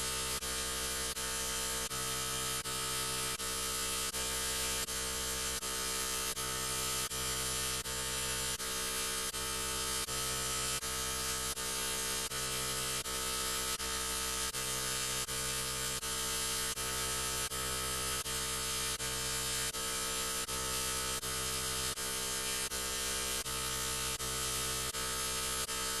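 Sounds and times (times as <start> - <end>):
distorted electronic buzzing drone: 14.3 - 26.0.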